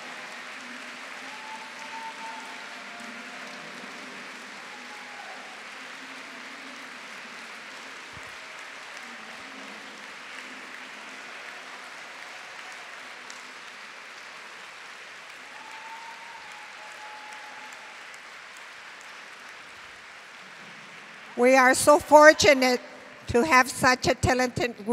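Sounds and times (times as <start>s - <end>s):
audience applauding: 0.0s - 23.7s
high held whistle or cheer: 1.1s - 3.8s, 15.4s - 18.1s.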